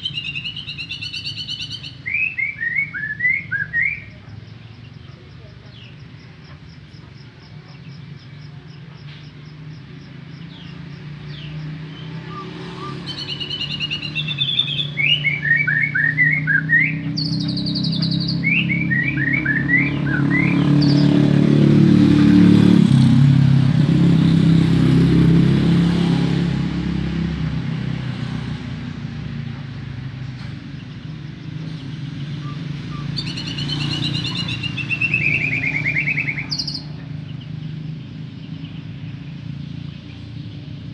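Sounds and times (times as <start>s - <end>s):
bird singing slurred whistles: 0.0s - 4.2s, 10.4s - 21.4s, 32.2s - 37.0s.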